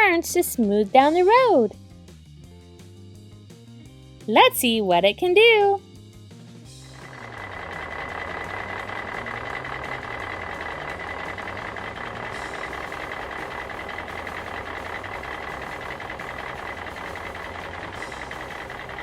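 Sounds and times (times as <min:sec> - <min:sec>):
toy motor humming and whining: 0:06.8 - 0:19.0.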